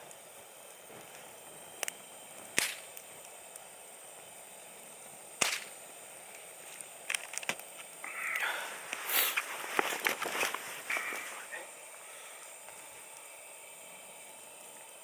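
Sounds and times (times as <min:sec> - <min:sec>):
faint steady hiss: 0:00.0 - 0:15.0
sharp snaps: 0:01.8 - 0:03.7, 0:05.4 - 0:09.5.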